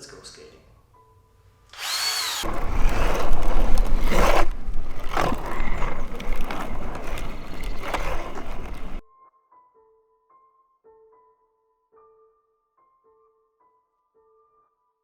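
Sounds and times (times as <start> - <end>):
inline skates grinding on hard surface: 1.8 - 9.0.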